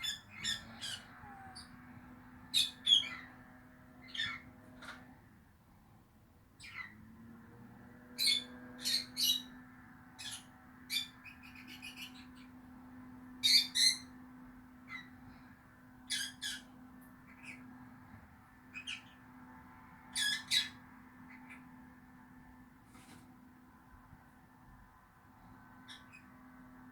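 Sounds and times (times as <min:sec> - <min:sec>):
lovebirds chirping shrilly: 0:00.0 - 0:01.7, 0:02.5 - 0:03.3, 0:04.0 - 0:04.5, 0:08.2 - 0:09.6, 0:10.2 - 0:12.6, 0:13.4 - 0:14.2, 0:16.0 - 0:17.7, 0:18.7 - 0:19.2, 0:20.1 - 0:21.7
faint steady hum: 0:00.0 - 0:26.9.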